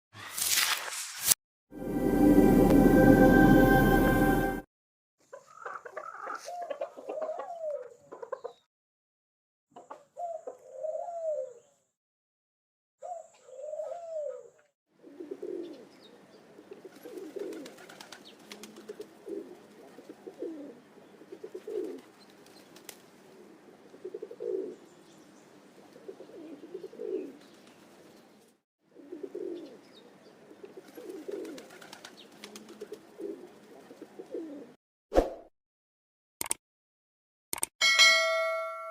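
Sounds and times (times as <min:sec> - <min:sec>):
pigeon cooing: 0:05.7 - 0:08.6, 0:09.8 - 0:11.7, 0:13.0 - 0:16.1, 0:16.7 - 0:22.2, 0:23.4 - 0:24.8, 0:25.9 - 0:27.4, 0:28.9 - 0:29.8, 0:30.6 - 0:34.8
sharp click: 0:36.4 - 0:36.6, 0:37.5 - 0:37.7.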